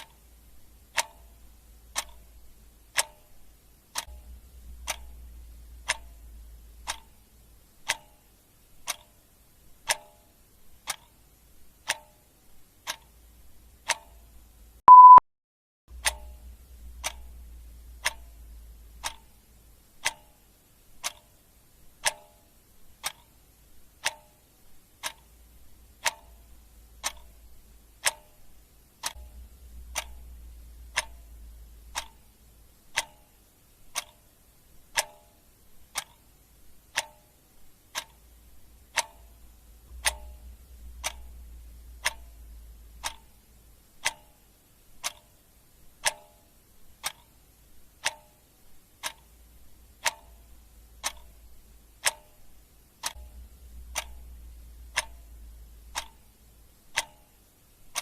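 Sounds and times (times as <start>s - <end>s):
clock ticking: 0.0s - 15.2s, 15.9s - 58.0s
short high beep: 14.9s - 15.2s.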